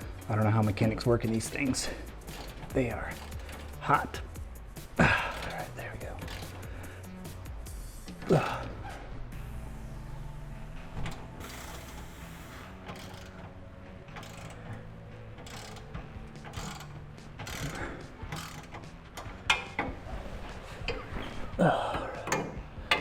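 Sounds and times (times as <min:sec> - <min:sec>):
hand ratchet clicking: 0:00.0 - 0:09.0, 0:11.0 - 0:20.0, 0:22.0 - 0:23.0
steady low hum: 0:00.0 - 0:23.0
metal tools clinking: 0:01.0 - 0:06.9.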